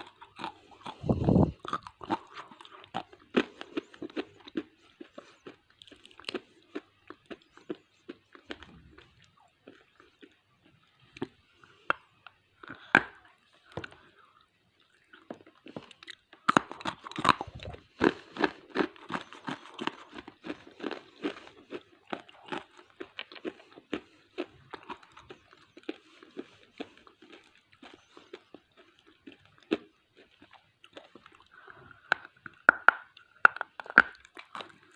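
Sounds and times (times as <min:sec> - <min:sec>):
person crunching hard clay: 0:00.0 - 0:02.6, 0:16.5 - 0:20.3.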